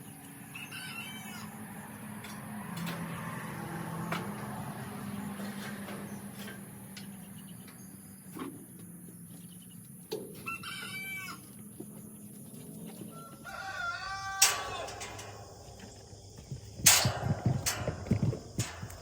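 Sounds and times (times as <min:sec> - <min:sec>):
chicken calling: 0:00.6 - 0:01.6, 0:10.4 - 0:11.6, 0:13.0 - 0:15.1.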